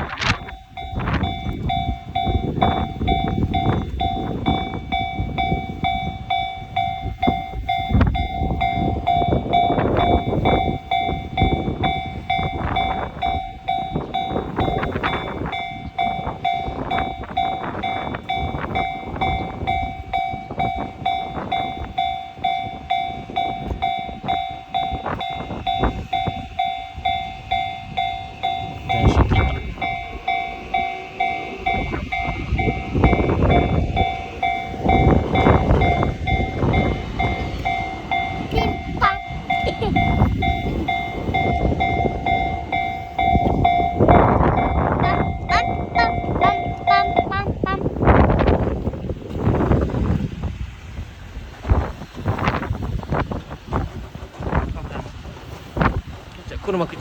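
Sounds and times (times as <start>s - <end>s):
level crossing alarm ringing: 0.0s - 48.4s
train rumbling: 0.0s - 57.0s.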